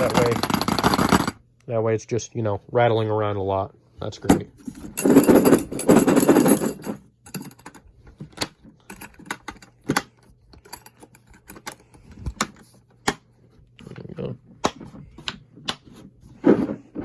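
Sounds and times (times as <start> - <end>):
metal sockets rattling in plastic case: 0.0 - 1.4, 4.3 - 7.8.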